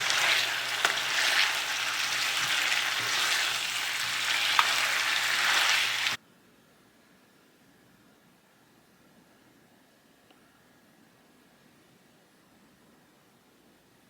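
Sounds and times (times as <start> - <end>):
food sizzling in hot oil: 0.0 - 6.2.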